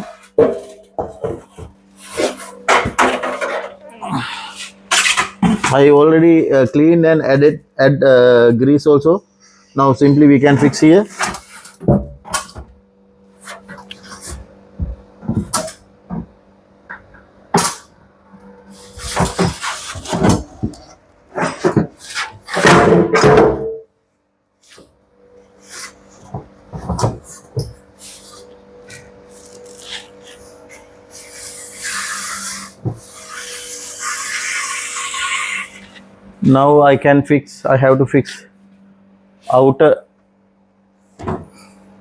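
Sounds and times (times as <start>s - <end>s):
hissing scraping: 31.1s - 36.0s.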